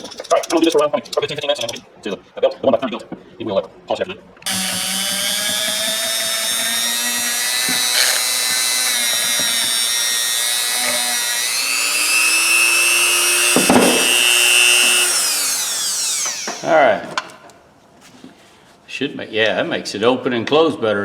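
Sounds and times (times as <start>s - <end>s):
power tool motor whining: 4.5s - 16.8s.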